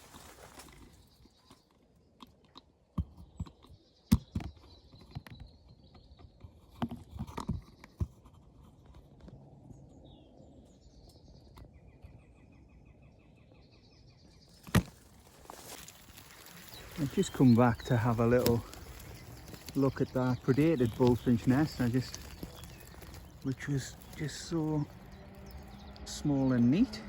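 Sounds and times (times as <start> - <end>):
footsteps through vegetation: 0.0 - 1.2, 14.5 - 26.4
wild birds singing: 0.0 - 27.0.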